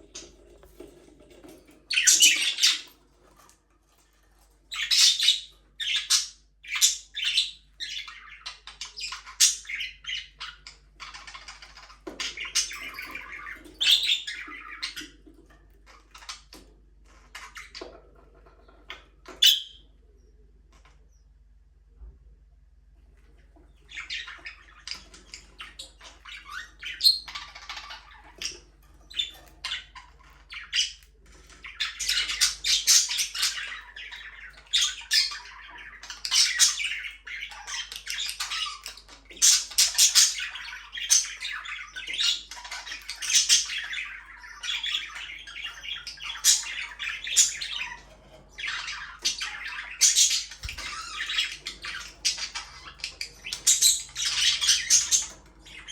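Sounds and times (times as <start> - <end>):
budgerigars chirping and squawking: 0.0 - 21.4, 23.2 - 55.9.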